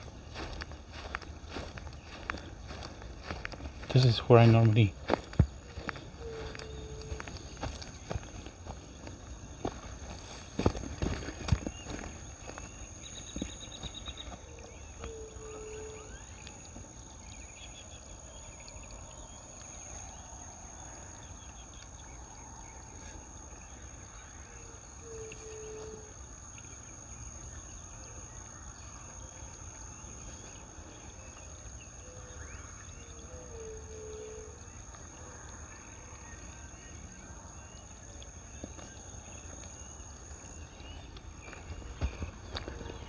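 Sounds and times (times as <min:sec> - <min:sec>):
birds trilling: 0:00.0 - 0:18.5, 0:30.3 - 0:43.0
high insect drone: 0:00.0 - 0:43.0.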